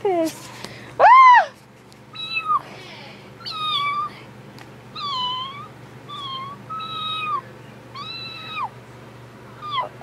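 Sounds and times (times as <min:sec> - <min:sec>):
cat meowing: 0:02.2 - 0:02.6, 0:03.4 - 0:04.1, 0:05.0 - 0:07.4, 0:08.0 - 0:08.7.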